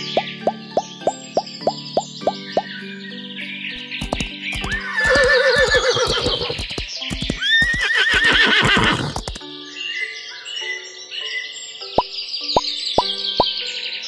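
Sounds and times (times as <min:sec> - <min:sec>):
background music: 0:00.0 - 0:14.0
clopping hoofbeats: 0:03.8 - 0:09.4
horse whinnying: 0:04.6 - 0:06.7, 0:07.3 - 0:09.4.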